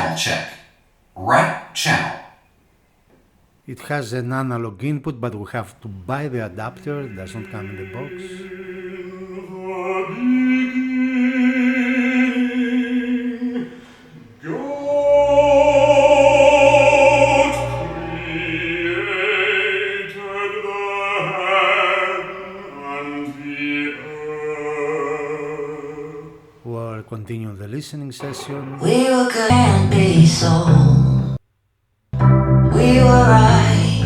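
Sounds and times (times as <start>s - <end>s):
operatic singing from speaker: 5.7s - 26.8s, 28.2s - 31.4s, 32.7s - 34.0s.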